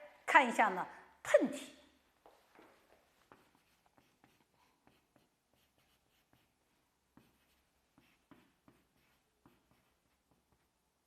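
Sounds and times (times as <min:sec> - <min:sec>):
pen or chalk writing: 0:03.1 - 0:10.7.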